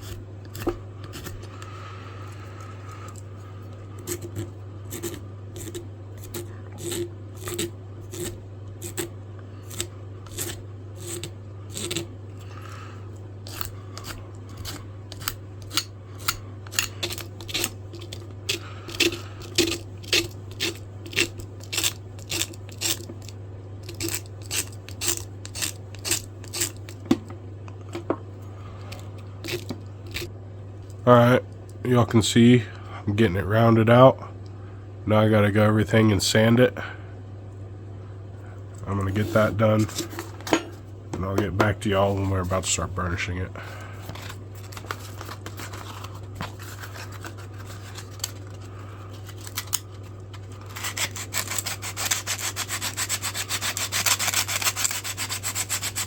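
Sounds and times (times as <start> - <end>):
hand file scraping wood: 50.6 - 56.0.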